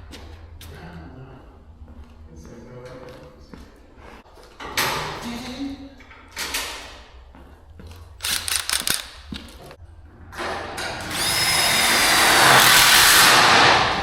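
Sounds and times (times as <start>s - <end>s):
cordless power driver whine: 11.0s - 14.0s.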